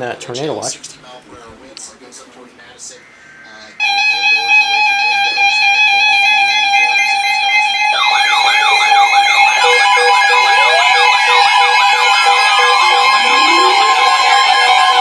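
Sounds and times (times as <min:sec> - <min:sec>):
rapid beeping: 0:03.8 - 0:15.0
warbling siren sweeps: 0:03.8 - 0:15.0.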